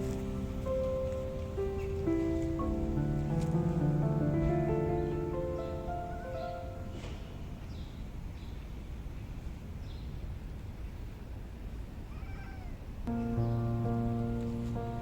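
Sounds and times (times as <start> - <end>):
music: 0.0 - 7.3, 13.1 - 15.0
low background noise: 0.0 - 15.0
cat meowing: 12.0 - 13.0.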